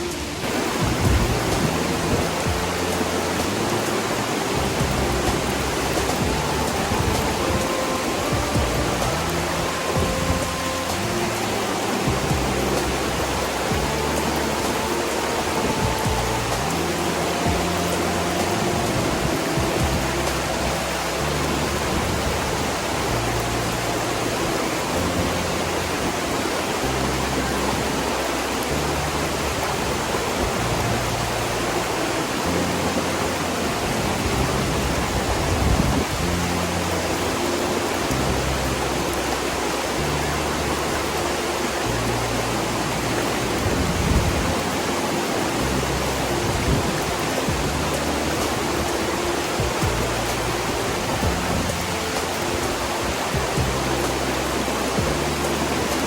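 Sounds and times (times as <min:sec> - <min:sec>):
background music with bass notes: 0:00.0 - 0:56.0
waterfall rushing: 0:00.0 - 0:56.0.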